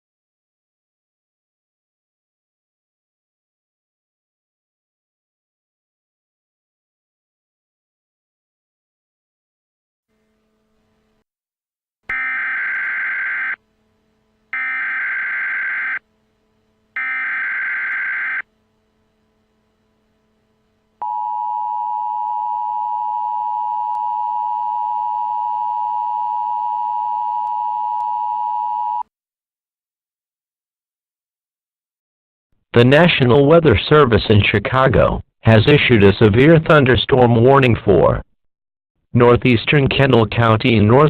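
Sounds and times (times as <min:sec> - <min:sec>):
digital header bursts: 0:12.1 - 0:13.6, 0:14.5 - 0:16.0, 0:17.0 - 0:18.5
two-tone attention signal: 0:12.1 - 0:13.6, 0:21.0 - 0:29.0.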